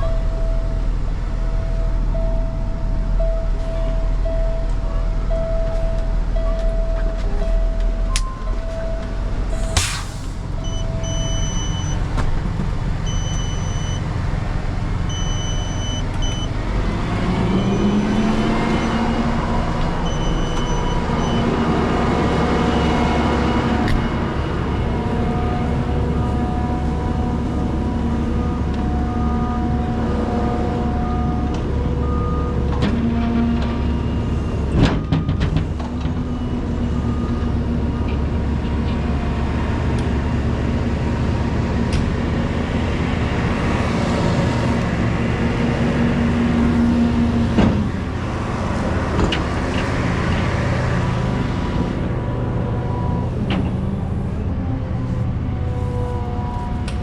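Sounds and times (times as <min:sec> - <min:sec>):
beeping: 0:00.0 - 0:09.8, 0:10.5 - 0:12.1, 0:13.0 - 0:14.1, 0:15.0 - 0:16.6, 0:17.4 - 0:21.7
heavy equipment engine running: 0:00.0 - 0:57.0.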